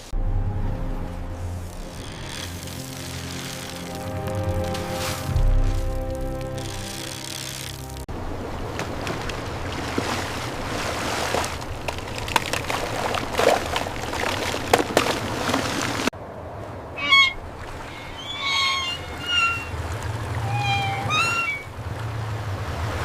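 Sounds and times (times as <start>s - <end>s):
high-pitched animal cries: 17.0s - 19.8s, 20.4s - 21.7s.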